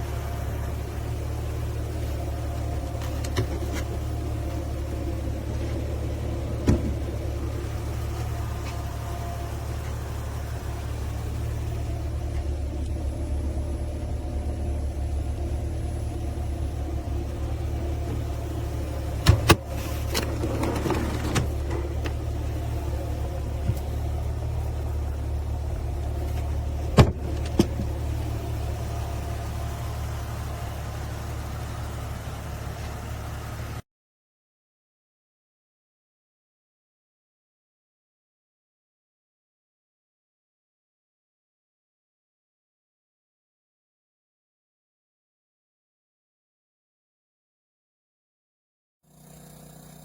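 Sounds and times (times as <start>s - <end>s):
low mechanical rumble: 0.0s - 33.8s.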